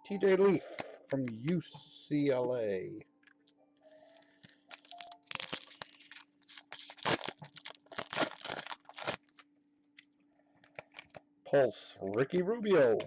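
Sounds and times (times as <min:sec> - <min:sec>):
faint steady hum: 0:00.0 - 0:13.0
wrapper crinkling and tearing: 0:03.9 - 0:09.5, 0:10.6 - 0:11.2.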